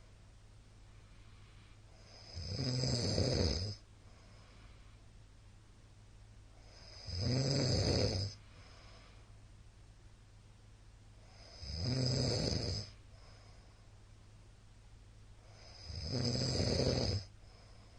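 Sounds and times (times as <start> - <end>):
quiet breathing: 0.0 - 5.6, 6.4 - 9.7, 11.0 - 14.6, 15.2 - 17.9
man snoring loudly: 2.0 - 3.8, 6.7 - 8.4, 11.3 - 13.0, 15.6 - 17.3.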